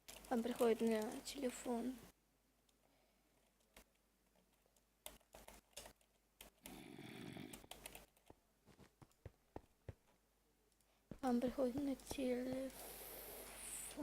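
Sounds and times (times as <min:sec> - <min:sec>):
faint clicks and taps: 0:07.5 - 0:12.8.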